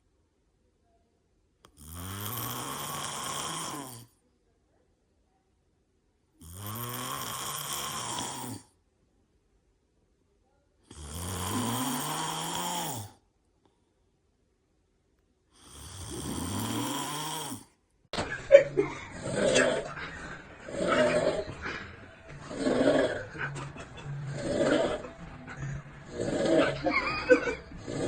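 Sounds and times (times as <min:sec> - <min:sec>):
person snoring: 0:01.7 - 0:04.1, 0:06.4 - 0:08.7, 0:10.9 - 0:13.2, 0:15.6 - 0:17.7, 0:18.5 - 0:28.0.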